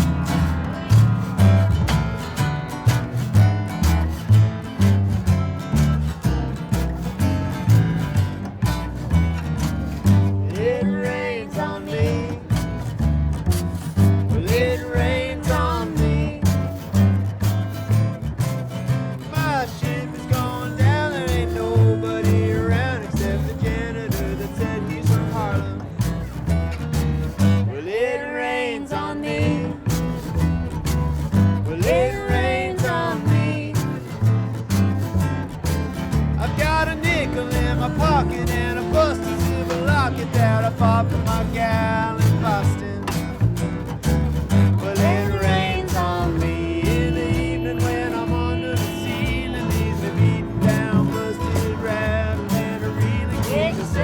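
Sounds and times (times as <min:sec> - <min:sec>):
bouncing bass line: 0:00.0 - 0:27.8, 0:29.1 - 0:54.0
strummed acoustic guitar: 0:00.0 - 0:54.0
sliding wavering melody line: 0:36.7 - 0:41.2.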